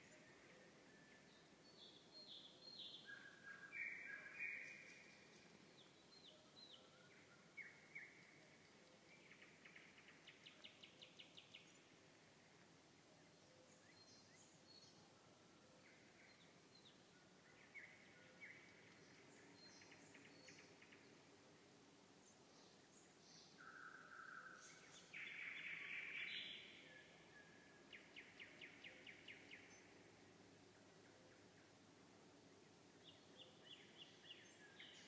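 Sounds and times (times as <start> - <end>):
nightingale singing faintly: 0.0 - 35.0.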